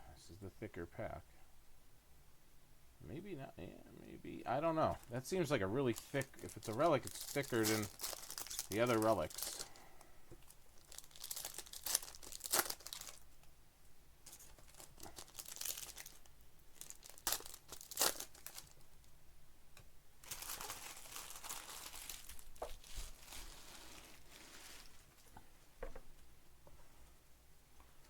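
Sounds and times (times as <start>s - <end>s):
cards rustling: 5.0s - 9.8s
wrapper tearing and crinkling: 5.9s - 9.8s, 10.5s - 13.2s, 14.3s - 19.0s, 20.2s - 25.0s.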